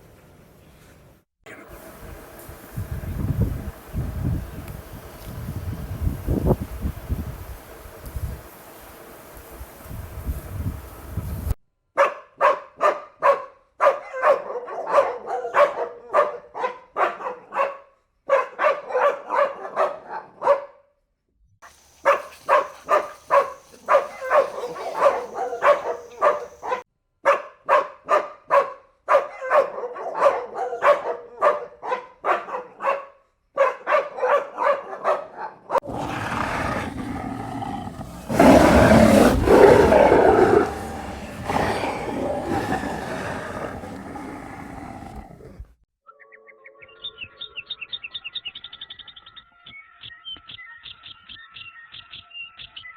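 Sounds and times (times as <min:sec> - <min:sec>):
dog barking: 0:12.0 - 0:20.9, 0:22.0 - 0:45.6.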